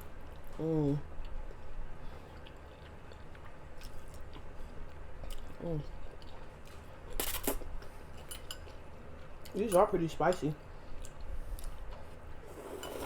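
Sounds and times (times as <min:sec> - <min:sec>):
person chewing noodles: 0:00.0 - 0:09.6, 0:10.6 - 0:13.0
person humming: 0:00.6 - 0:01.0.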